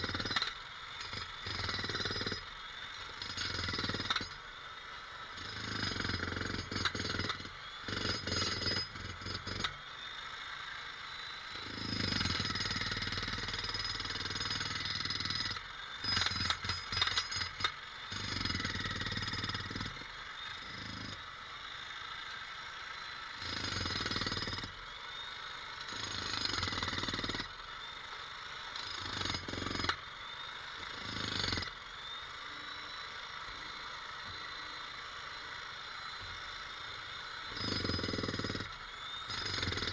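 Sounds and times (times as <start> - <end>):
jackhammer hammering: 0.0 - 4.4, 5.3 - 9.8, 11.6 - 21.2, 23.3 - 24.8, 25.8 - 27.6, 28.7 - 30.0, 30.8 - 31.8, 37.4 - 39.9.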